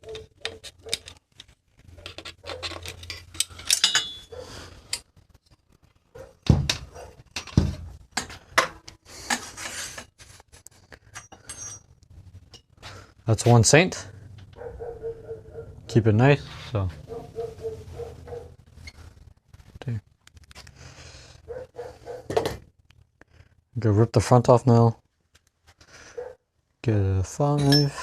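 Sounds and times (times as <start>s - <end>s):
hand tools clinking on metal: 2.1s - 5.0s, 11.1s - 11.9s, 27.6s - 28.0s.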